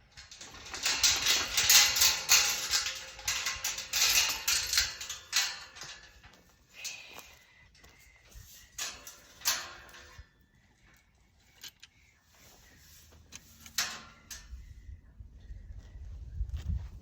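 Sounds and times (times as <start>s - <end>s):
fencing gear knocking and rattling: 0.0s - 7.1s.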